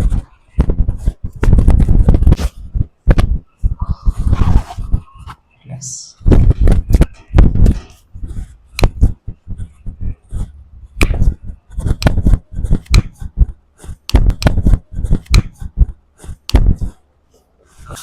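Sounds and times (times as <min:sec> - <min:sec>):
hands slapping a body: 0:11.0 - 0:11.3, 0:15.2 - 0:15.6.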